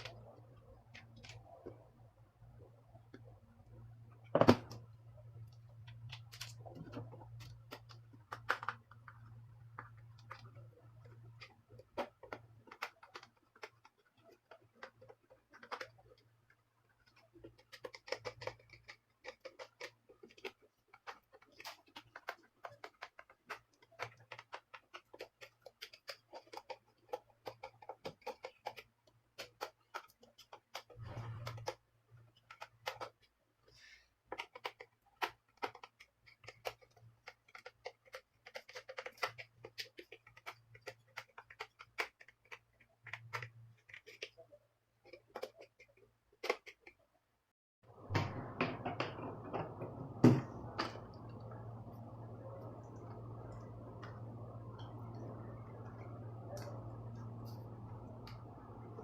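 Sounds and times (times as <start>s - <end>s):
low hum: 47.9s - 59.0s.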